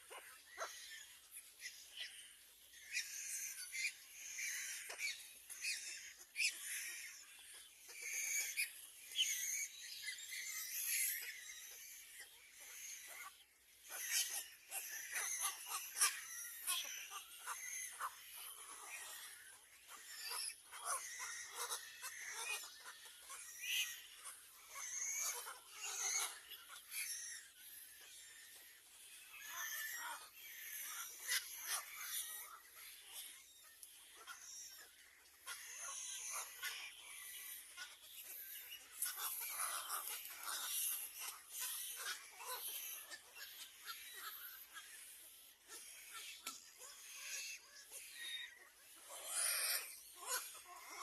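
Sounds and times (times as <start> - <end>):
nestling crows begging calls: 13.8 - 51.0.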